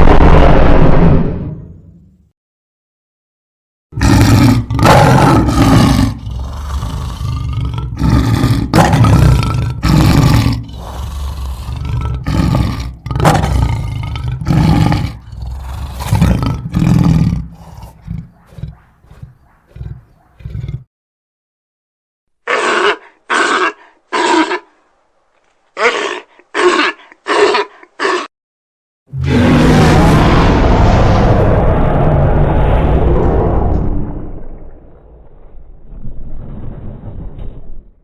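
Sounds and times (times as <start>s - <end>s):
deep monster roars: 4.0s - 20.9s, 29.1s - 34.4s.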